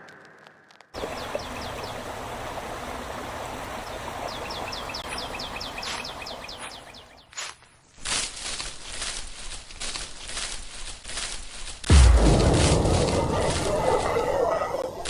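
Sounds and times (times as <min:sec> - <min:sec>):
bird chirping: 0:01.0 - 0:02.0, 0:03.8 - 0:07.4
stream rushing: 0:01.0 - 0:07.1, 0:11.9 - 0:15.0.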